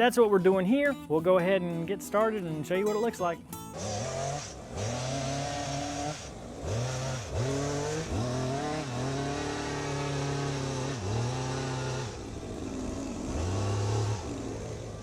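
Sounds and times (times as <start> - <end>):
two-stroke engine revving: 3.7 - 15.0.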